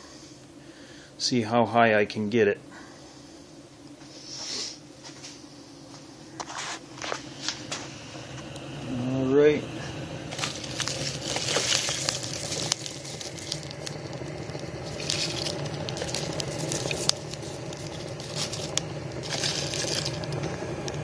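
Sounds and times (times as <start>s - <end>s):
fire crackling and popping: 6.0s - 21.0s
hissing: 6.8s - 21.0s
low rush of fire: 7.2s - 21.0s.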